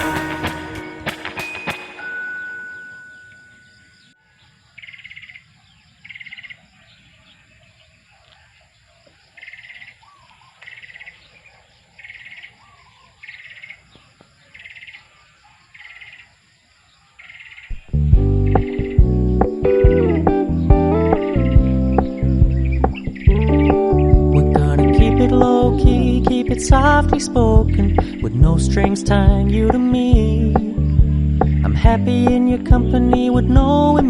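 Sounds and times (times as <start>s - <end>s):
music: 0.0s - 3.0s, 18.0s - 34.0s.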